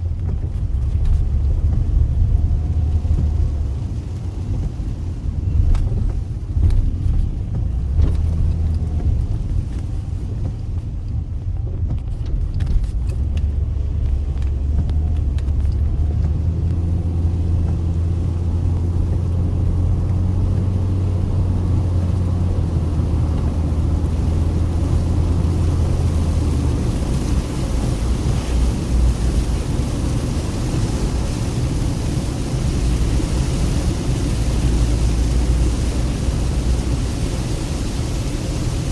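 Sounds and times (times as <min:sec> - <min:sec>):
car engine and tyres droning: 0:00.0 - 0:38.9
hiss: 0:23.6 - 0:38.9.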